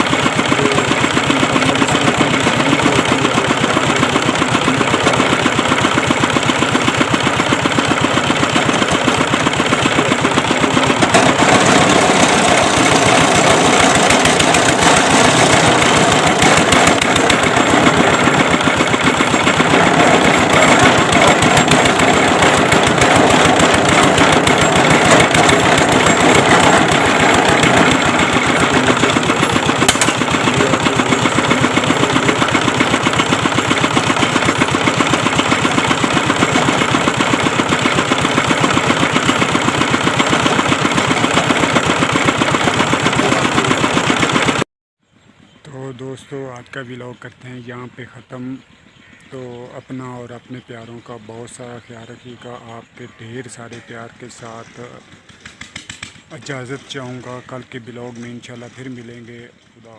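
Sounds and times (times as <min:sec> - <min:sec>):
boring machine engine running: 0:00.0 - 0:44.7, 0:45.7 - 0:59.9.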